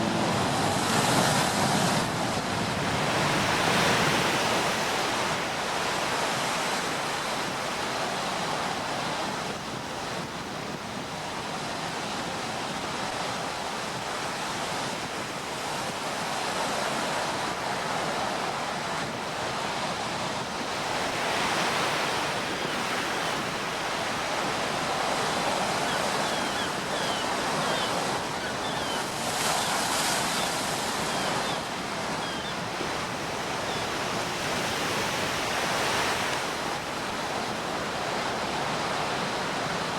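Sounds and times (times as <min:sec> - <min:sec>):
sea waves washing on shore: 0:00.0 - 0:39.9.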